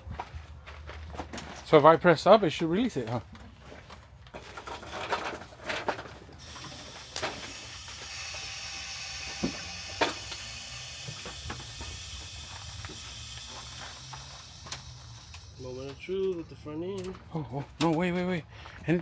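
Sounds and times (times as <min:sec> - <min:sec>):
floor jack hissing: 0:06.4 - 0:16.7.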